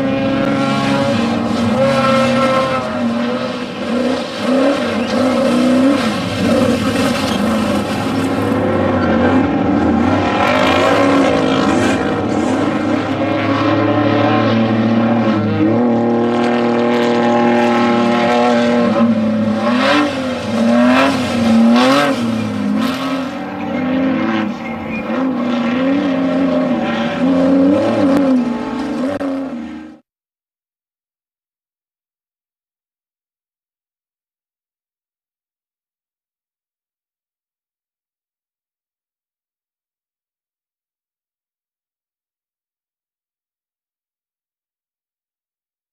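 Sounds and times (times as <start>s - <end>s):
race vehicle engine revving: 0.0s - 30.0s.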